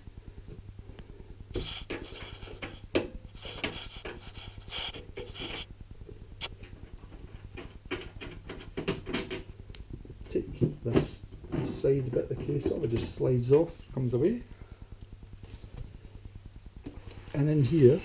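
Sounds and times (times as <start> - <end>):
steady low hum: 0.0 - 18.0
screws scratching and clicking: 1.6 - 5.7.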